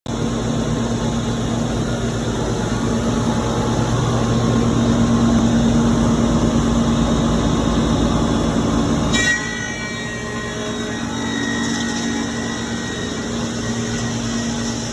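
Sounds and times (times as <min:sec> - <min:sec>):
wood planer running: 0:00.2 - 0:14.9.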